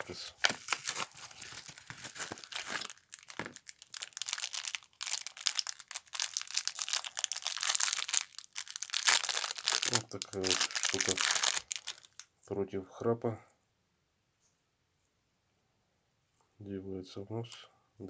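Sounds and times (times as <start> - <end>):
packaging crinkling and rustling: 0.0 - 12.2.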